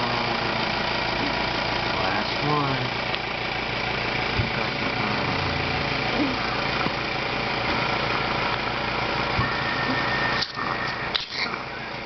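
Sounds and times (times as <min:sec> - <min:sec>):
cough assist machine humming: 0:00.0 - 0:12.0.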